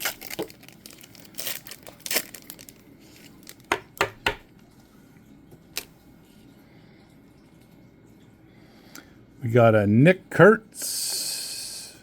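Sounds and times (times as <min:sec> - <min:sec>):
wrapper rustling and crinkling: 0:00.0 - 0:04.0.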